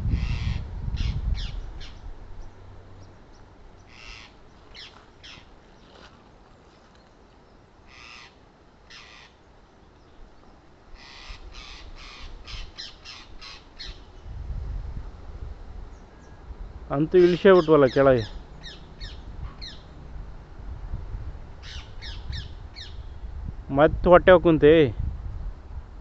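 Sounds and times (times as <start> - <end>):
parrot screeching: 0.2 - 1.5, 3.9 - 4.9, 7.9 - 8.3, 11.0 - 13.9.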